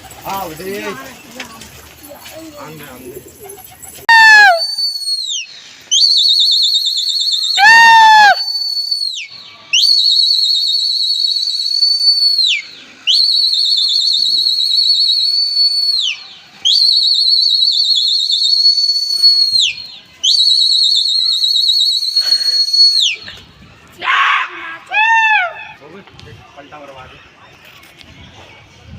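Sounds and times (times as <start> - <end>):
downward-sliding whistle: 4.1 - 23.2
shrill whistle blasts: 4.1 - 23.3.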